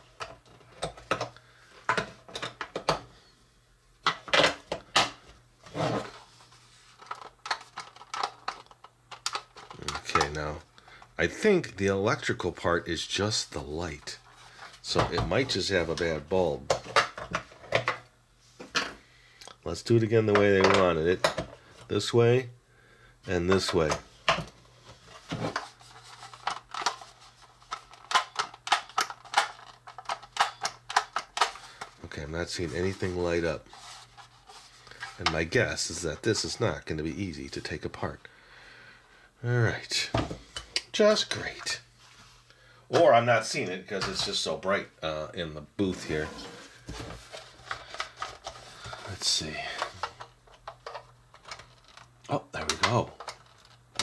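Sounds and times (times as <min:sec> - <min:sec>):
batteries and plastic parts clicking: 0:07.0 - 0:11.1, 0:23.5 - 0:32.0, 0:47.2 - 0:54.0.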